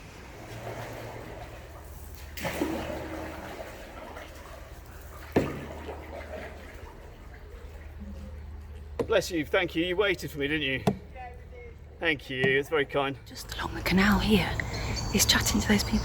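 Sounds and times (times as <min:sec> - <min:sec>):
rushing water: 0:00.0 - 0:10.8
low steady hum: 0:00.0 - 0:16.0.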